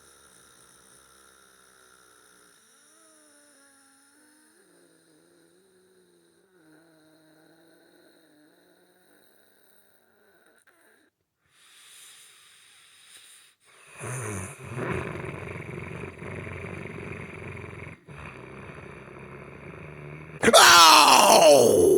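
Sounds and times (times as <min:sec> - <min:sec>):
person snoring: 0:11.8 - 0:21.9
loud cry falling in pitch: 0:20.4 - 0:21.9.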